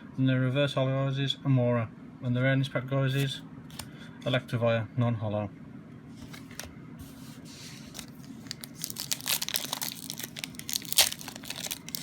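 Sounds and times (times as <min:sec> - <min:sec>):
foil wrapper crinkling and tearing: 0:08.0 - 0:12.0.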